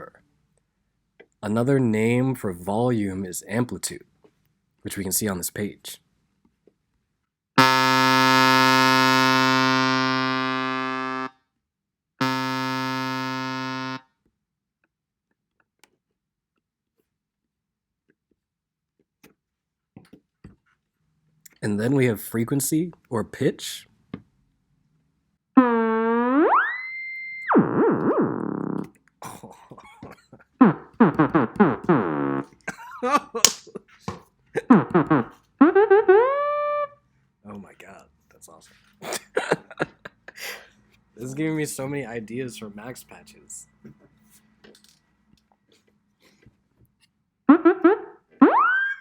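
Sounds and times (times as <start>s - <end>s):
synthesizer note: 7.6s - 11.3s, 12.2s - 14.0s, 34.8s - 37.0s.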